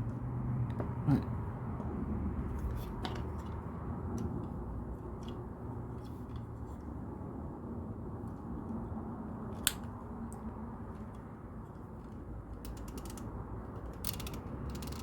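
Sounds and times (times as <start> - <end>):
plastic mechanism ratchet clicking: 12.6 - 15.0.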